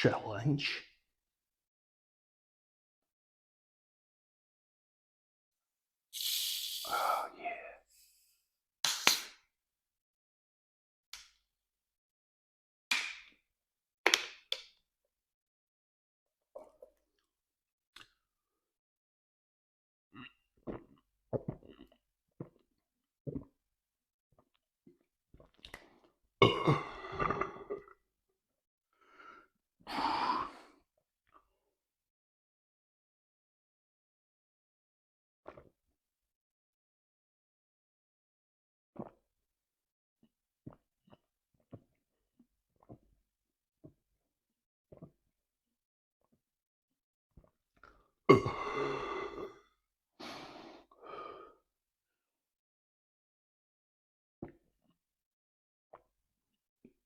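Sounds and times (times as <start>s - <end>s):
short breathy exhales: 6.2s - 7.4s
man burping: 26.4s - 27.8s, 48.3s - 49.6s.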